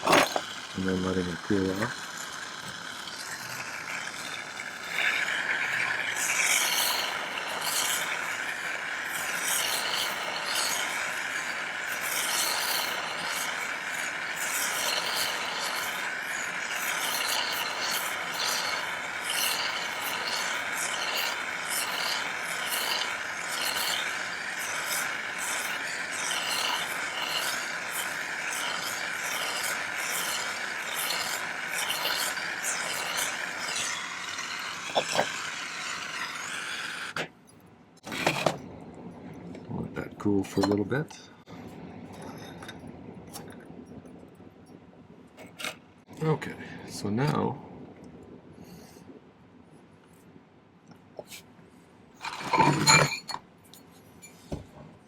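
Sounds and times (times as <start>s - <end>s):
gas torch flame hissing: 0.0s - 37.3s.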